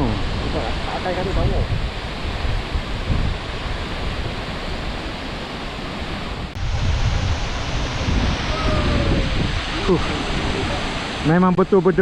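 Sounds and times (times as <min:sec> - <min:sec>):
wind buffeting microphone: 0:00.0 - 0:12.0
waterfall crashing into pool: 0:06.1 - 0:12.0.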